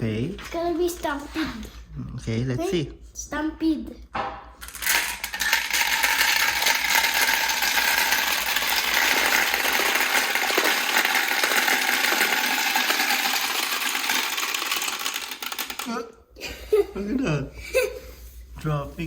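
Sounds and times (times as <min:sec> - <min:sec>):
marbles clattering down track: 0:04.6 - 0:16.0.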